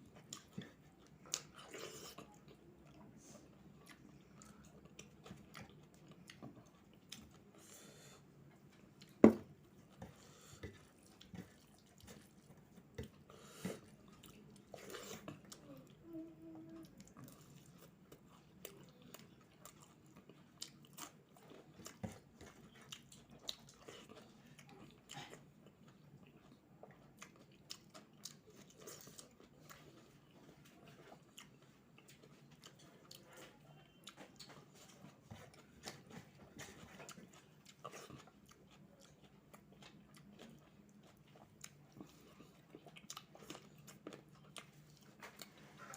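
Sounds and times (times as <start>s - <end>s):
person chewing and biting food: 34.0s - 45.9s.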